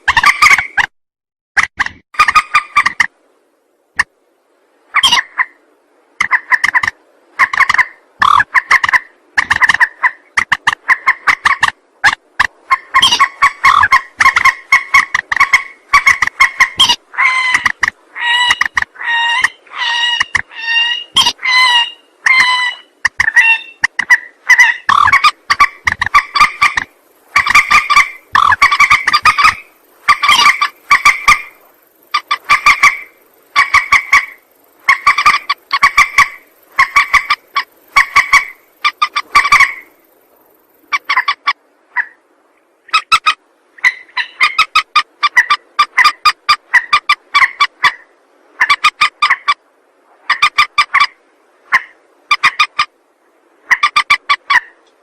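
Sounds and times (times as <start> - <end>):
loud pitched bird calls: 12.8 - 40.0.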